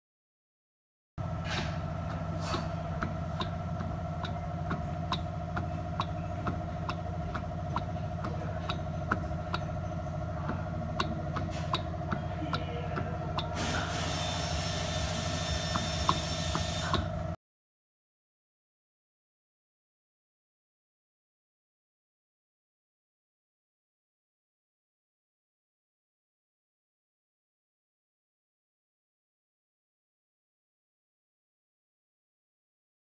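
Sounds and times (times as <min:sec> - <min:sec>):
car running hum: 0:01.2 - 0:17.4
ticking rattle: 0:02.0 - 0:13.6
hiss: 0:13.6 - 0:17.0.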